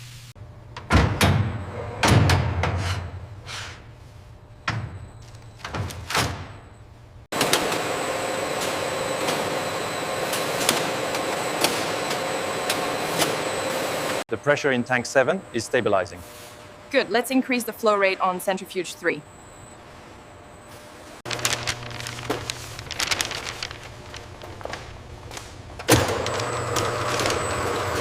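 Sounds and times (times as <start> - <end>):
machinery humming: 6.9 - 28.0.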